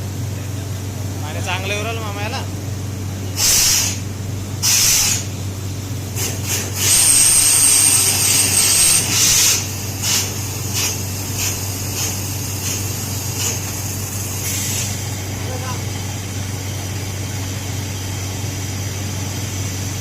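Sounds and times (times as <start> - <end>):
drilling rig droning: 3.2 - 20.0
hissing blasts: 3.4 - 5.5, 6.1 - 15.2
thin high whistle: 6.8 - 9.7.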